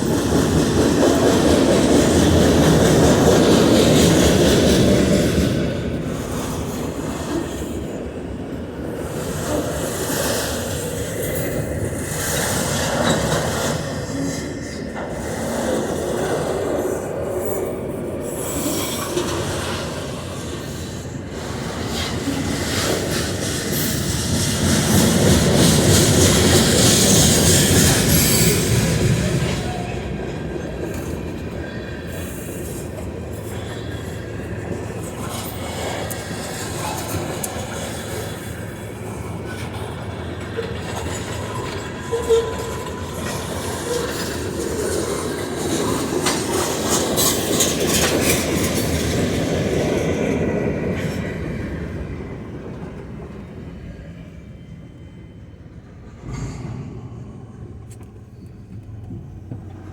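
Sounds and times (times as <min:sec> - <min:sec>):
train wheels clacking over rail joints: 0:00.0 - 0:07.9, 0:09.0 - 0:17.1, 0:18.3 - 0:51.9
wheel squeal: 0:30.6 - 0:49.4.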